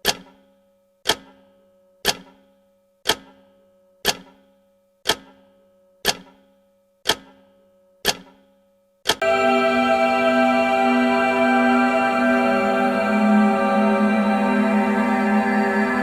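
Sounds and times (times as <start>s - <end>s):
clock ticking: 0.0s - 9.2s
slow sustained music: 9.2s - 16.0s.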